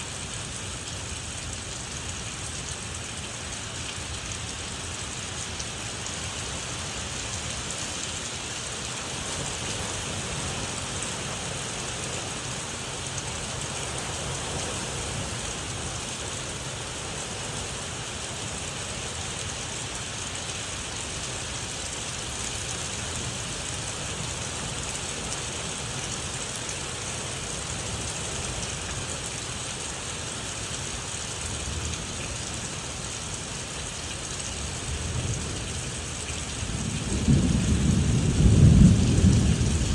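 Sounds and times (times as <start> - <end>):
heavy rain falling: 0.0 - 39.9
distant thunder rumbling: 36.6 - 39.9.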